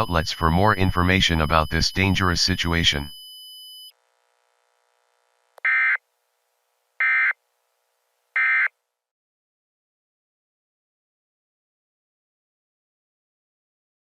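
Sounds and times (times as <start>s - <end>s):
faint steady tone: 0.0s - 8.8s.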